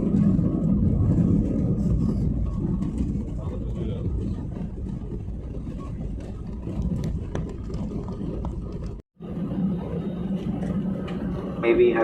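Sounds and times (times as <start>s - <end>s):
airliner cabin rumble: 0.0s - 12.0s.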